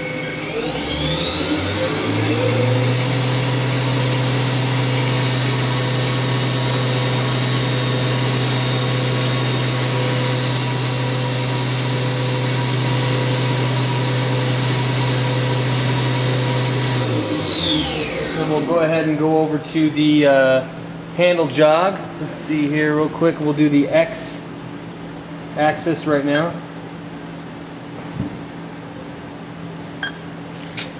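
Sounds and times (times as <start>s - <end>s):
machine spindle whine: 0.0s - 19.6s.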